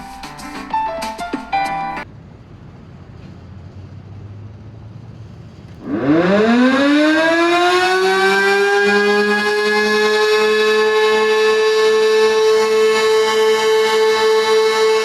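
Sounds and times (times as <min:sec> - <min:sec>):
warning siren winding up: 0:05.8 - 0:15.0.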